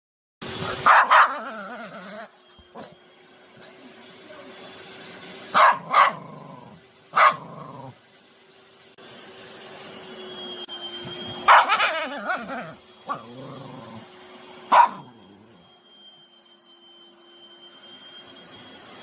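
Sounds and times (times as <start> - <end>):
dog barking: 0.8 - 1.6, 5.5 - 6.4, 7.1 - 7.6, 11.5 - 13.3, 14.7 - 15.2
dog growling: 5.8 - 8.0, 11.9 - 14.1.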